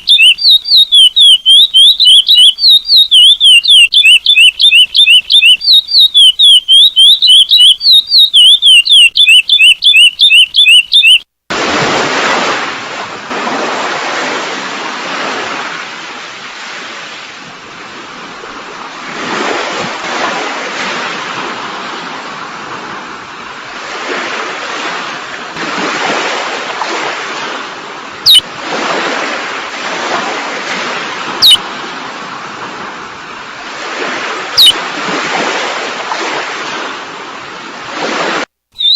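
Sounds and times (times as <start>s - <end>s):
finch song from a recording: 0.0s - 11.3s, 28.2s - 28.4s, 34.6s - 34.8s
ocean surf waves: 11.0s - 38.9s.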